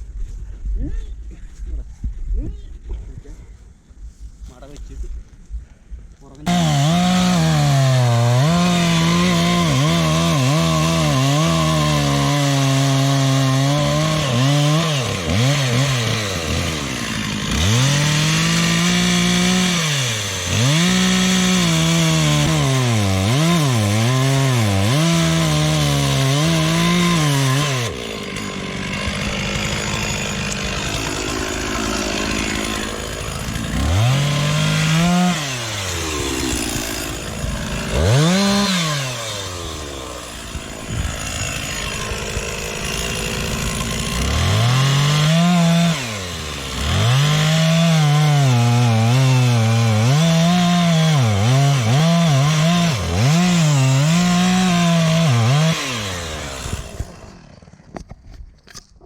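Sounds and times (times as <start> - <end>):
chainsaw cutting wood: 6.4 - 59.0.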